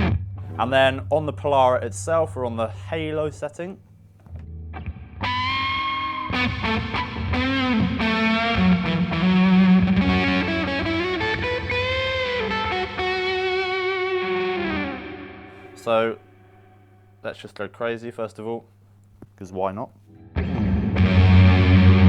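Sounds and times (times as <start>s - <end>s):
distorted electric guitar with reverb: 4.4s - 15.7s, 20.1s - 22.0s.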